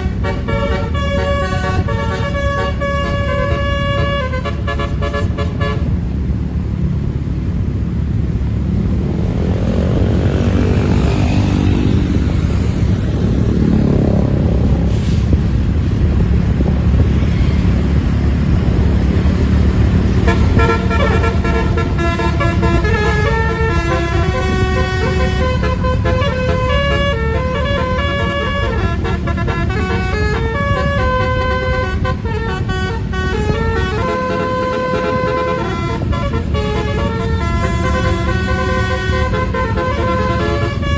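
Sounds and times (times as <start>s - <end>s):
musical multi-tone bus horn: 0.0s - 6.2s, 19.7s - 40.9s
bus engine rumble: 0.0s - 40.9s.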